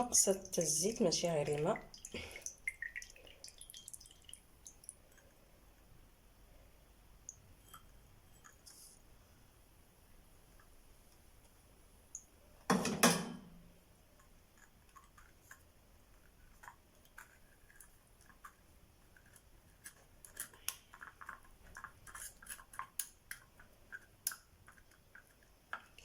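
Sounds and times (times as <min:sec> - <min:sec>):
small clicks and scrapes: 0:07.6 - 0:09.0, 0:14.1 - 0:26.0.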